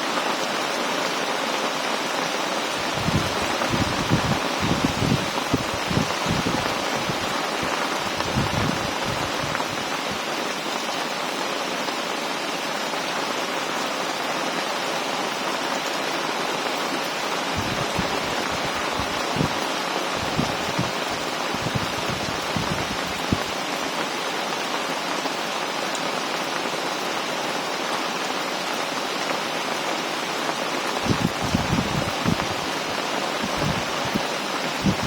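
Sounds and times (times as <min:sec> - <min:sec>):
heavy rain pouring: 0:00.0 - 0:35.0
wind buffeting microphone: 0:02.8 - 0:10.3, 0:17.4 - 0:19.6, 0:20.2 - 0:23.6, 0:31.0 - 0:35.0.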